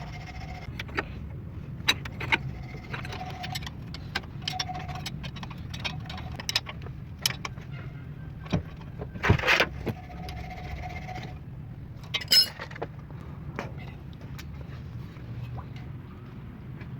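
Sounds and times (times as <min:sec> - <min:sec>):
metallic clicks and knocks: 0:01.8 - 0:11.4, 0:12.0 - 0:14.6.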